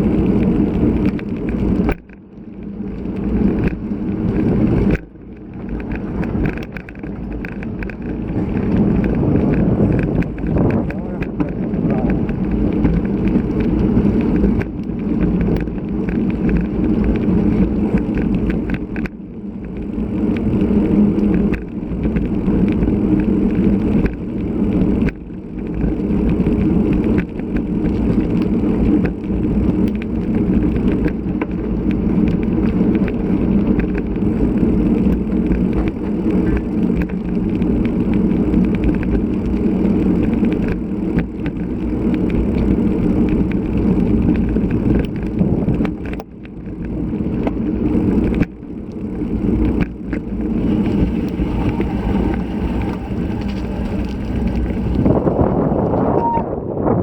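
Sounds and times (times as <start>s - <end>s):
road noise: 0.0s - 57.0s
wind rumble: 0.0s - 57.0s.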